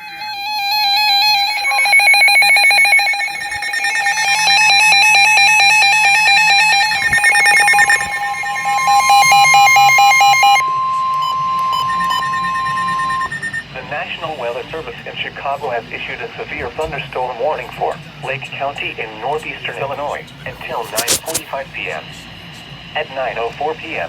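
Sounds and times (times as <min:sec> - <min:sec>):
weather radio alarms beeping: 0:00.8 - 0:13.6.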